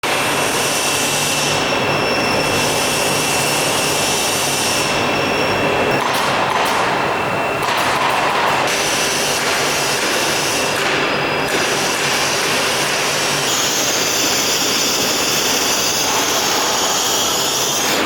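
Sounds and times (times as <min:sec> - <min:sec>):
high spindle whine: 0:08.9 - 0:18.0
router whirring: 0:11.8 - 0:18.0.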